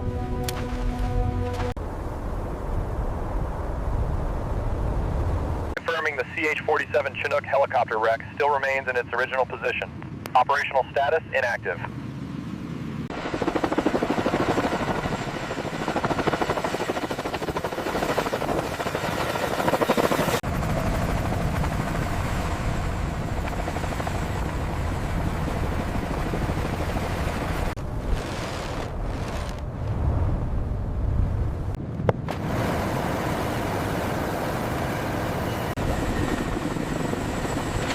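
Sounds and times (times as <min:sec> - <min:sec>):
helicopter rotor beating: 0:11.9 - 0:29.6, 0:32.2 - 0:37.9
steady low rumble: 0:28.8 - 0:32.3.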